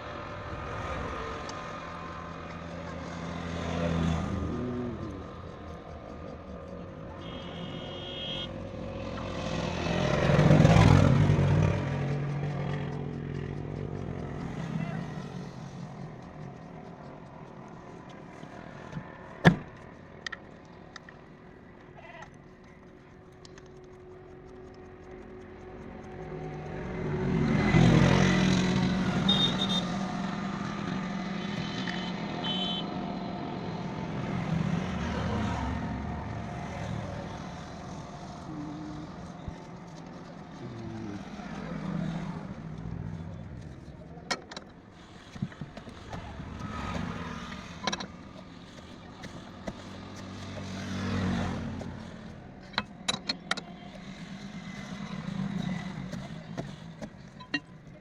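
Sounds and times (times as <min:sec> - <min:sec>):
vehicle engine: 0:00.0 - 0:58.0.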